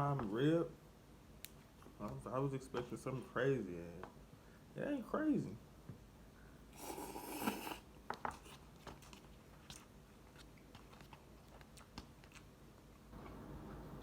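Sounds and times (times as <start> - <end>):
person slurping noodles: 6.8 - 8.6
soft chewing: 6.8 - 13.8.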